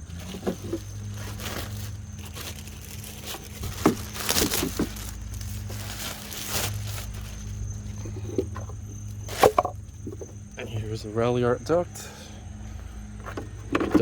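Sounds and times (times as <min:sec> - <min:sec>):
lawn mower droning: 0:00.0 - 0:14.0
plastic rustling and clicking: 0:00.1 - 0:07.5.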